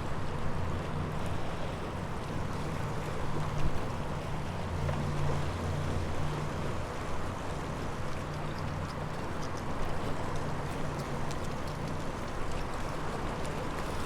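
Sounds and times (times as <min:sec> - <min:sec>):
faint ticks: 0:08.0 - 0:13.6.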